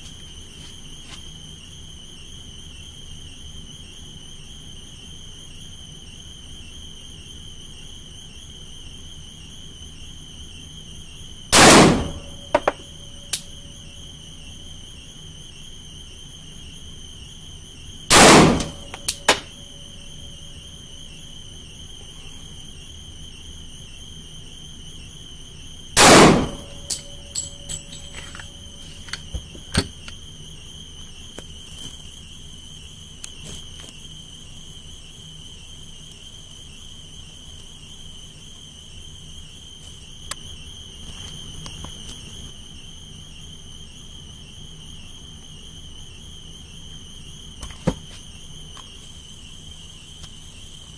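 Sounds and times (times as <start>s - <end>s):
pistol gunshots: 11.6s - 12.7s, 18.1s - 19.5s, 26.0s - 27.0s
steady high-pitched tone: 26.3s - 29.6s.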